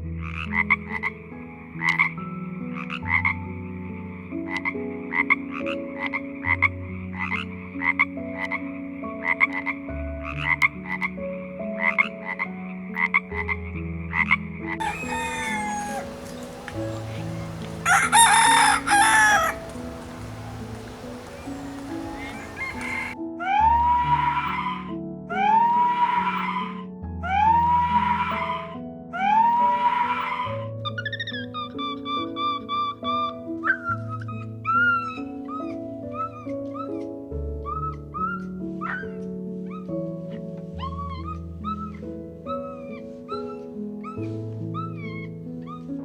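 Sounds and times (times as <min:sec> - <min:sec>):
frog croaking: 0:14.8 - 0:23.2
rooster crowing: 0:14.8 - 0:23.2.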